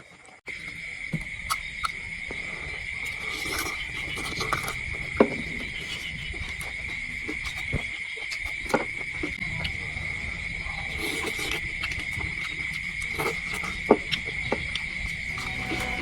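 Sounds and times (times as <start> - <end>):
high-pitched insect drone: 15.0 - 16.0.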